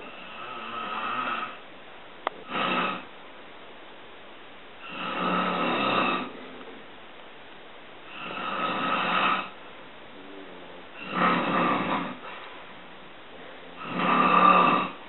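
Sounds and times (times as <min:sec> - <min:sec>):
man snoring: 0:00.0 - 0:01.6, 0:02.4 - 0:03.1, 0:04.8 - 0:06.5, 0:08.1 - 0:09.6, 0:11.0 - 0:12.3, 0:13.7 - 0:15.0.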